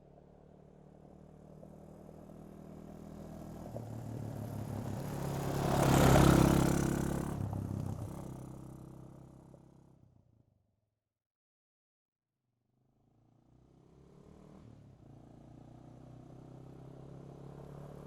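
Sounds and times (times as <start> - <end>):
quad bike engine passing: 0.0 - 10.1, 13.1 - 18.0.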